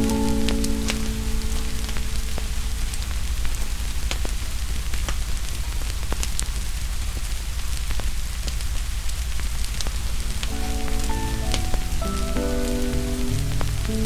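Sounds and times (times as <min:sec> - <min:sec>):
steady rain with low rumble: 0:00.0 - 0:14.0
wood fire crackling and popping: 0:00.0 - 0:14.0.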